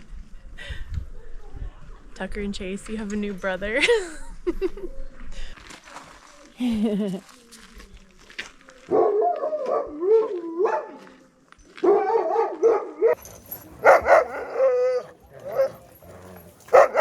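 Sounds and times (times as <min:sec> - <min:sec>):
dogs howling and barking: 0:08.9 - 0:11.0, 0:11.8 - 0:17.0.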